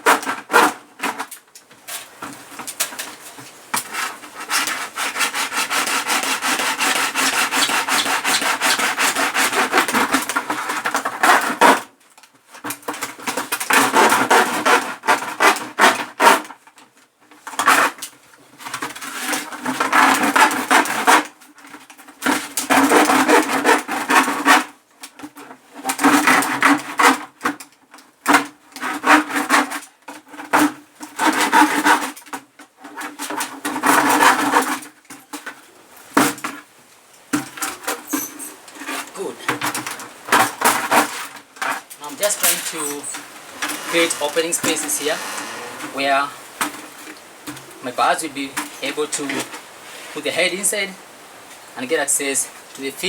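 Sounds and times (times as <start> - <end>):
knife sawing through plastic: 0.0 - 1.3, 3.8 - 11.9, 13.0 - 16.7, 17.5 - 18.1, 18.9 - 27.6, 28.3 - 35.0, 38.8 - 46.9.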